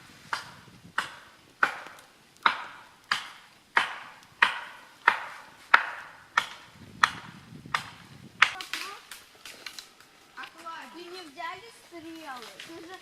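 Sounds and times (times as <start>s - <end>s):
sharp chopping blows: 0.3s - 9.2s.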